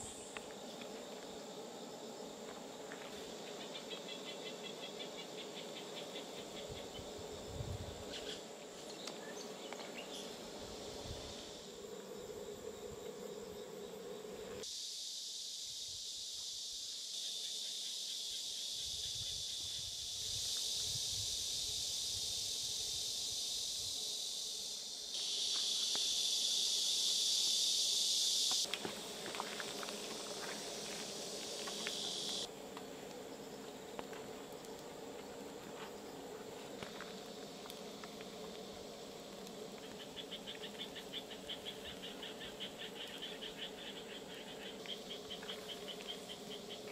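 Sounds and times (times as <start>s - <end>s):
insects chirping: 0.0s - 46.9s
food sizzling over camp fire: 19.4s - 43.7s.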